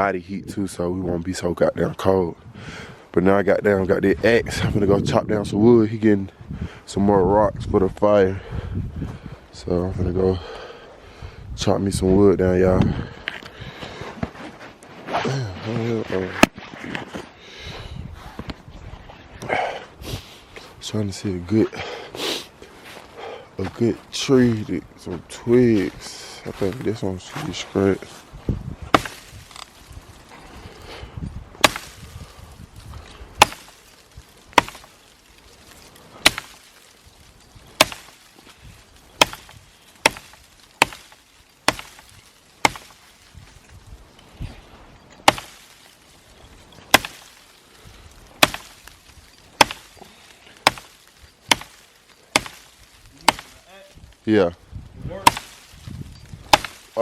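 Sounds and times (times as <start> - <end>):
axe chopping wood: 28.9 - 29.9, 31.6 - 32.4, 33.4 - 43.3, 45.2 - 46.1, 46.8 - 47.6, 48.2 - 53.8, 55.1 - 57.0.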